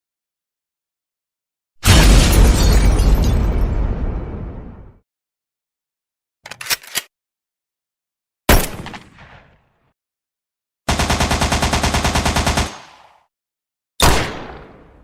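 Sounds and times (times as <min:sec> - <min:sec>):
gun clicks: 0:06.5 - 0:07.1
single gunshot: 0:08.5 - 0:09.6, 0:14.0 - 0:15.0
automatic gunfire burst: 0:10.9 - 0:12.9.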